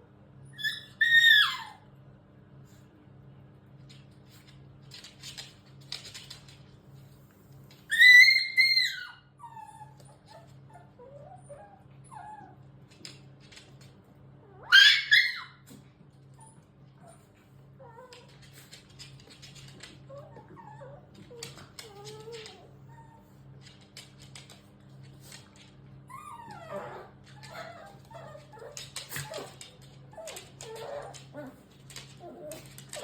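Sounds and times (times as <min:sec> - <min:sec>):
dog squealing: 0:00.5 - 0:01.8, 0:07.9 - 0:10.0, 0:14.6 - 0:15.6
dog whining: 0:00.5 - 0:01.8, 0:07.9 - 0:12.6, 0:14.4 - 0:15.8, 0:20.1 - 0:23.3, 0:26.1 - 0:33.0.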